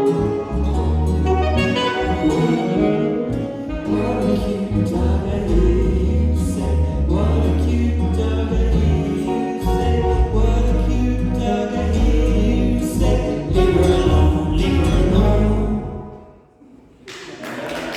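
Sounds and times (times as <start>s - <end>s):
live band playing: 0.0s - 7.4s, 8.8s - 15.9s
strong bass line: 0.0s - 16.1s
sung vocal harmonies: 0.0s - 17.9s.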